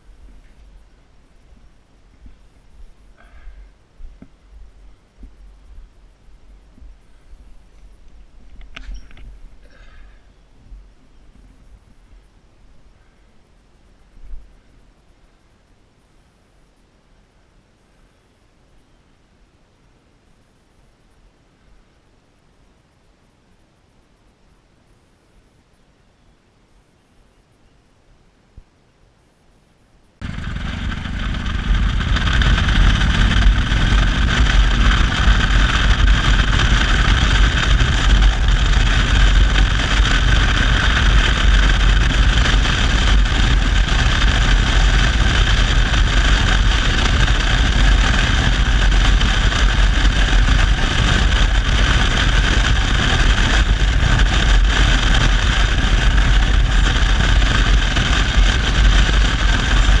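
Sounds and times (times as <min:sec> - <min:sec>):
engine running with rattle: 0:30.2 - 1:00.0.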